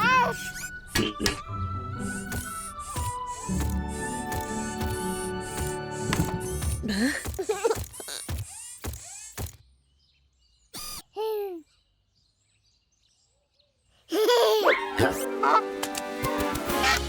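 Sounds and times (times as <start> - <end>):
cartoon bird chirping: 0.0 - 1.4, 2.1 - 9.4.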